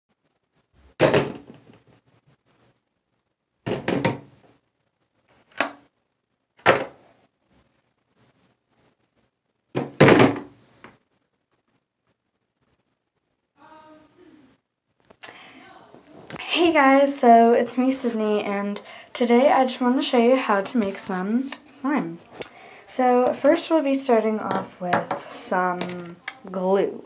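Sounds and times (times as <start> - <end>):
knocks and thumps: 0.8 - 1.9, 3.6 - 4.4, 6.6 - 7.0, 9.8 - 11.0.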